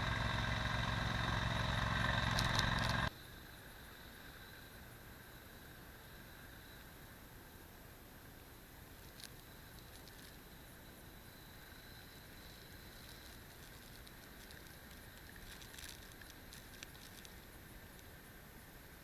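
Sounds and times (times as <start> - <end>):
faint steady hiss: 2.3 - 19.0
faint clicks: 13.0 - 18.1.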